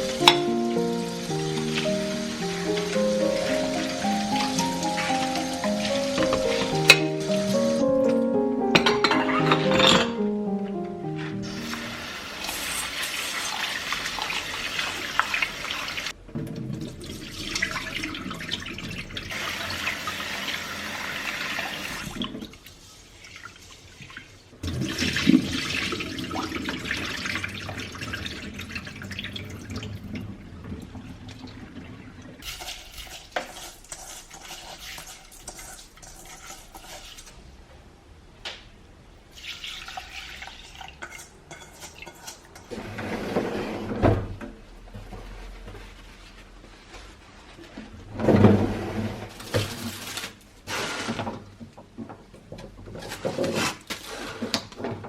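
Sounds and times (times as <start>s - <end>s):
water running from a tap: 0.0s - 7.8s, 11.5s - 16.2s, 16.8s - 37.3s.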